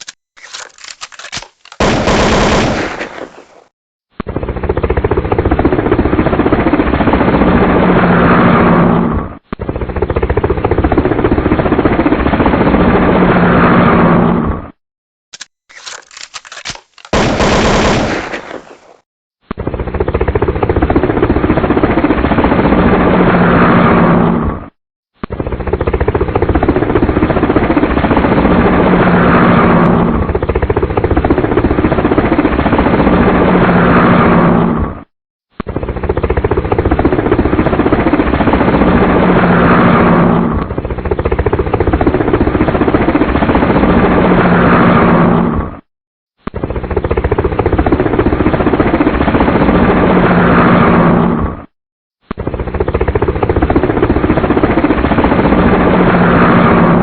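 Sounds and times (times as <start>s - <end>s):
crackling burst: 0.0s - 3.7s, 15.4s - 19.0s
helicopter rotor chopping: 0.0s - 14.5s, 15.3s - 19.0s, 19.6s - 24.5s, 25.3s - 35.0s, 35.6s - 45.6s, 46.5s - 51.6s, 52.3s - 57.0s.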